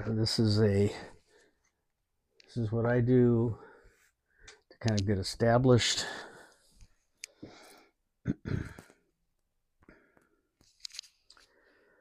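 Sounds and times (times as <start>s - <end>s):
man sighing: 8.3s - 9.0s.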